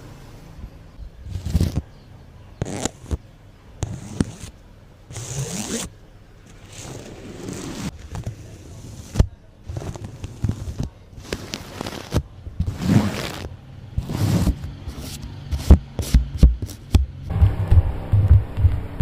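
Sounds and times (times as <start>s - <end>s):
scratchy swishes on microphone: 6.7s - 17.8s
heavy low thumps: 15.6s - 19.0s.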